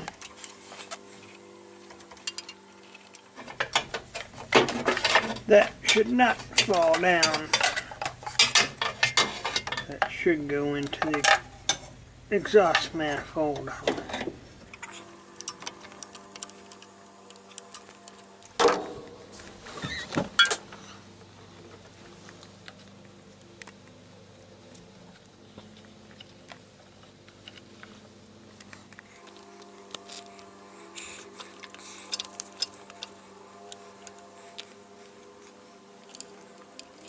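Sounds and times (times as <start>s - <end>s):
steady low hum: 0.0s - 37.0s
metal parts clicking and clinking: 2.0s - 16.8s.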